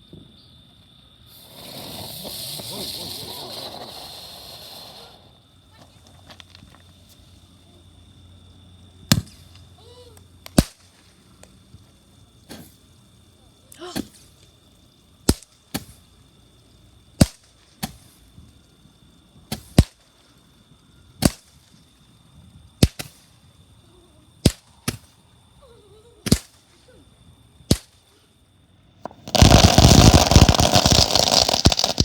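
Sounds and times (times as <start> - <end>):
sharp cracks: 10.4 - 11.5, 15.2 - 16.0, 17.2 - 18.0, 21.2 - 21.7, 22.8 - 23.3, 24.4 - 25.1, 26.2 - 26.7, 27.7 - 28.1, 29.0 - 32.0
dense burst of noise: 29.2 - 32.0.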